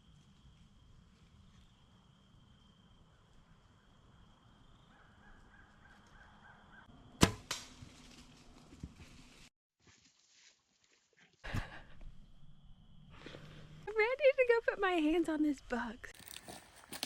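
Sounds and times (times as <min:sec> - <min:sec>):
compound bow shot crack: 0:07.2 - 0:08.2.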